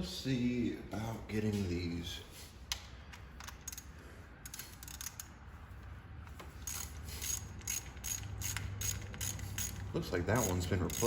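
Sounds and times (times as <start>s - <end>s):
ratchet wrench clicking: 3.4s - 5.4s, 6.6s - 11.0s.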